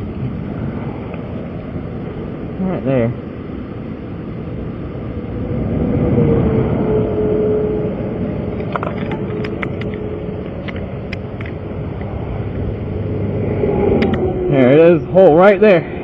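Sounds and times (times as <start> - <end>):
highway traffic rushing: 0.0 - 16.0
vehicle passing by: 5.0 - 16.0.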